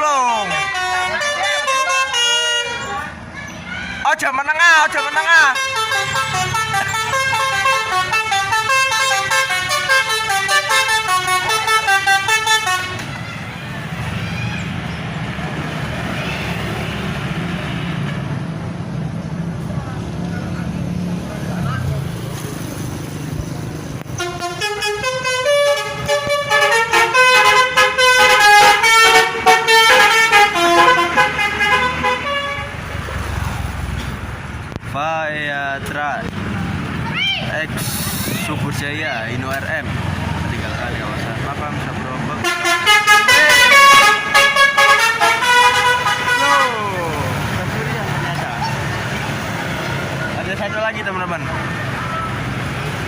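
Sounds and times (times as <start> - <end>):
bus engine rumble: 0.0 - 53.0
musical air horn tune: 24.2 - 32.7, 42.4 - 46.8.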